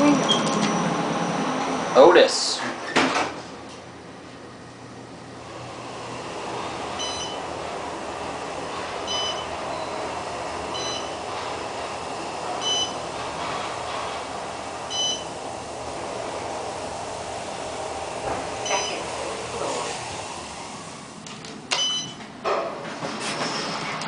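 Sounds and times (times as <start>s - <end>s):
elevator running noise: 0.0s - 24.0s
short electronic beep: 18.6s - 19.0s, 21.8s - 22.2s.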